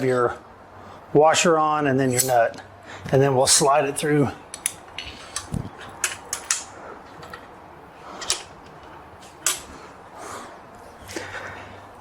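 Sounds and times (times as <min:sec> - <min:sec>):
metal clicks and clinks: 0:04.5 - 0:07.4.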